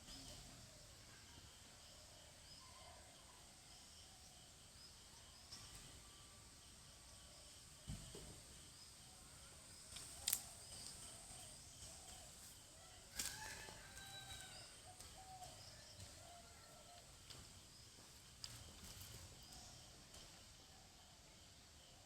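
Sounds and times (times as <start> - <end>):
faint bird chirps: 0.0 - 7.9
insect-like hum: 0.0 - 22.0
sharp clicks: 9.9 - 11.0.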